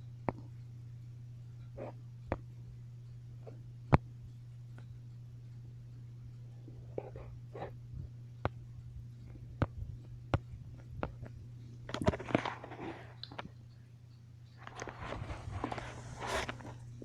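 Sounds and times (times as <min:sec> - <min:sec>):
ceiling fan humming: 0:00.0 - 0:17.0
rustling: 0:14.5 - 0:17.0.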